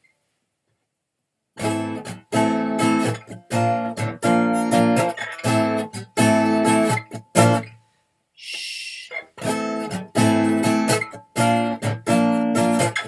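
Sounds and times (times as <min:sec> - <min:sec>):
acoustic guitar strumming chords: 0:01.6 - 0:07.8, 0:09.1 - 0:13.0.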